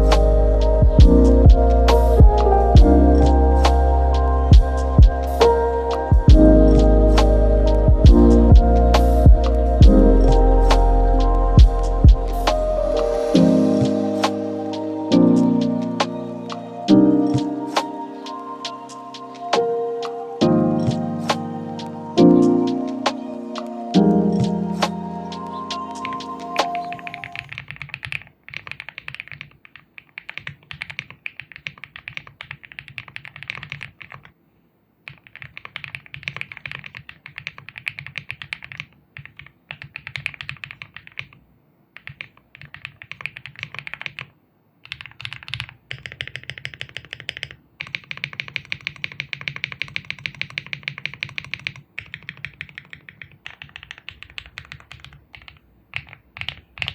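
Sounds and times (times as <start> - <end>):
mechanical keyboard typing: 20.8 - 34.3, 35.1 - 41.4, 42.0 - 56.9.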